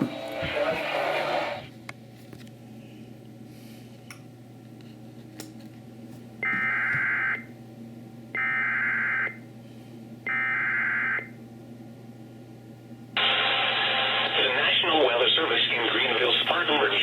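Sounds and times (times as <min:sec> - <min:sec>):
faint receiver hum and hiss: 0:11.1 - 0:17.0.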